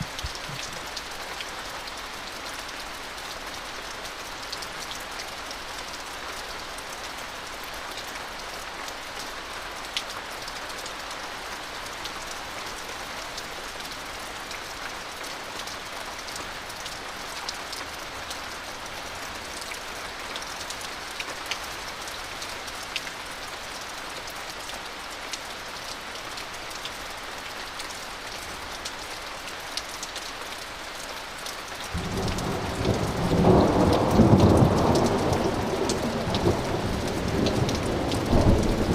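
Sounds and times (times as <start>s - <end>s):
raindrops ticking on surfaces: 0.0s - 38.9s
steady rain falling: 0.0s - 38.9s
deep rumble of thunder: 32.0s - 38.9s.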